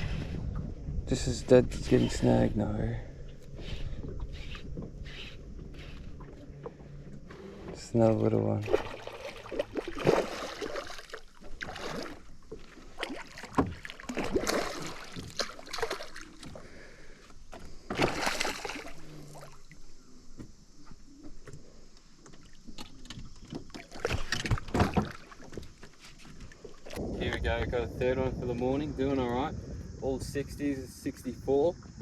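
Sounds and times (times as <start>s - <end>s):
fish splashing: 8.6s - 19.8s.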